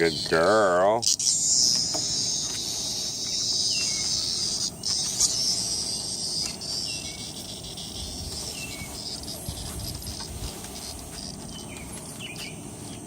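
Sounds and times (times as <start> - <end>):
cicada buzzing: 0.0 - 13.0.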